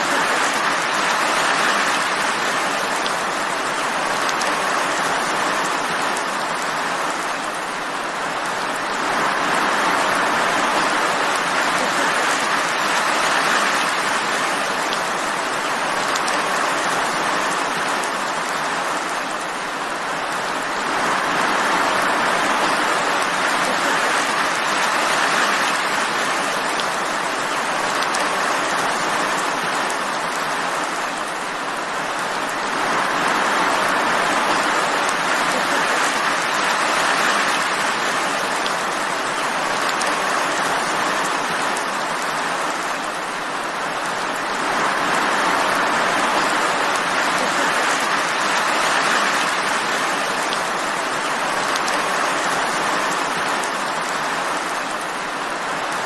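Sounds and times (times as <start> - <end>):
steady rain hiss: 0.0 - 56.0
raindrop ticks: 3.8 - 6.8, 16.0 - 18.7, 26.5 - 27.0, 27.8 - 28.8, 33.8 - 42.4, 51.6 - 54.2.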